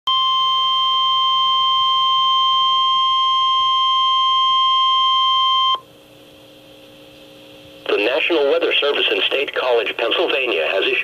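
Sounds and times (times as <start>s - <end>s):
steady alarm tone: 0.1s - 5.8s.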